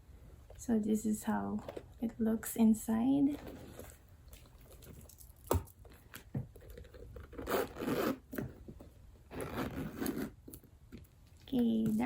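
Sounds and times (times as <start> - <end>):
zipper closing: 6.8 - 8.4, 9.3 - 10.5.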